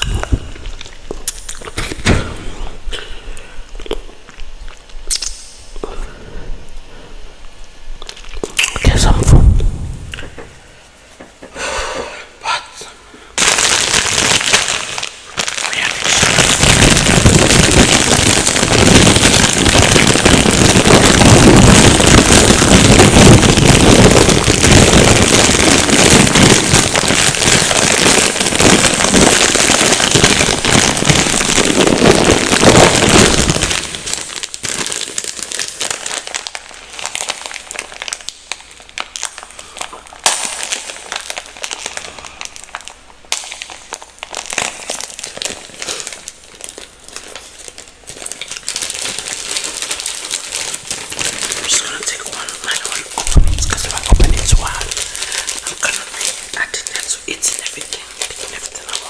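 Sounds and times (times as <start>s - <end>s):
microphone being scratched: 8.3s - 11.5s, 16.0s - 29.4s, 53.2s - 55.0s.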